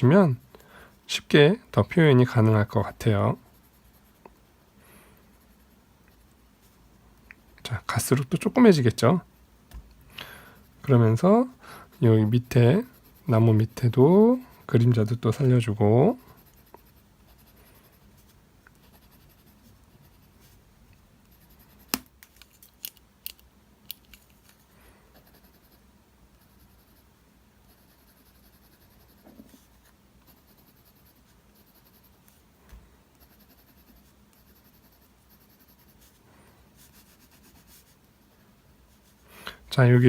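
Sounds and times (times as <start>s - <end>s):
pencil scratching on paper: 2.3s - 4.2s, 10.6s - 20.6s, 21.2s - 22.0s, 25.2s - 25.8s, 26.4s - 32.4s, 33.1s - 36.2s, 36.8s - 38.1s.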